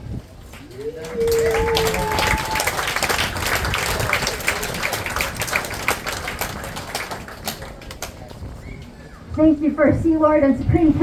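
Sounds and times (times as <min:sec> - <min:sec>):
crowd hand clapping: 0:00.4 - 0:08.5.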